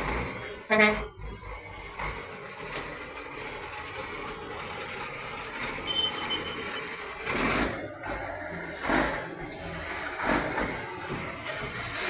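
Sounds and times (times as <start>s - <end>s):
short high-pitched beep: 5.9s - 6.6s.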